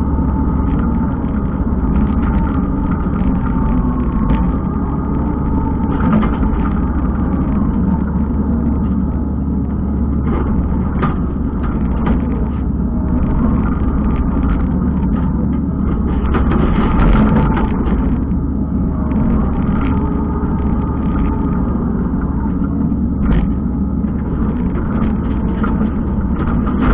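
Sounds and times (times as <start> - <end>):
diesel engine running under load: 0.0 - 26.9
sharp knocks and rattles: 10.1 - 18.4.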